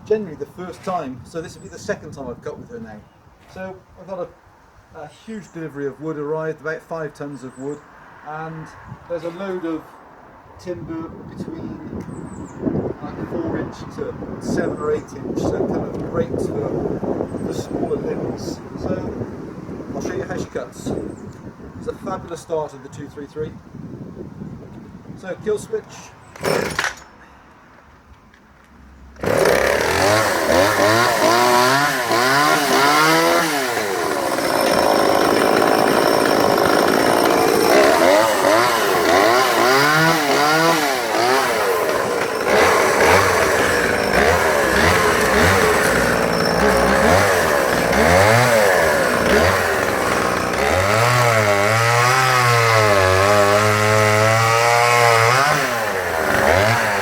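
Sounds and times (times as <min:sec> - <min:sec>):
chainsaw revving and cutting: 0:26.4 - 0:27.0, 0:29.2 - 0:57.0.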